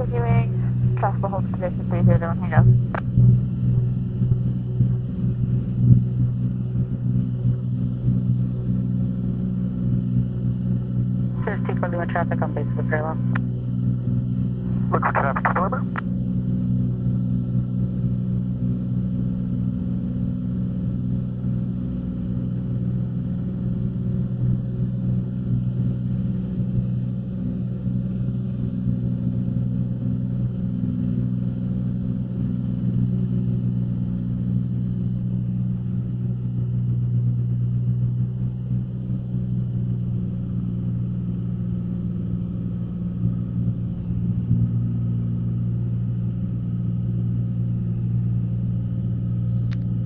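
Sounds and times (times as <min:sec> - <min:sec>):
propeller plane engine droning: 0:00.0 - 0:50.0.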